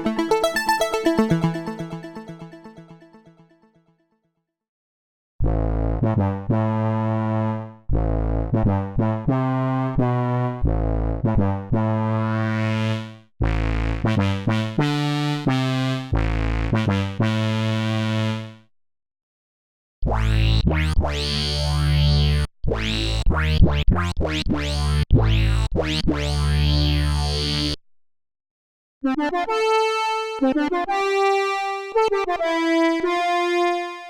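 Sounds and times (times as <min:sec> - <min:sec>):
bright synthesizer patch: 0:00.0 - 0:02.8
synthesizer low sustained chords: 0:00.0 - 0:02.8.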